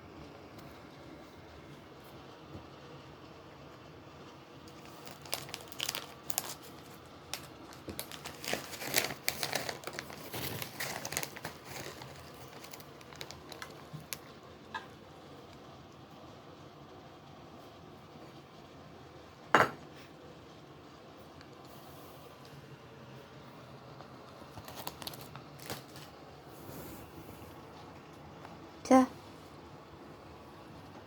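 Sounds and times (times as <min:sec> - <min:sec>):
packaging crinkling: 0:04.6 - 0:14.4, 0:24.2 - 0:26.2.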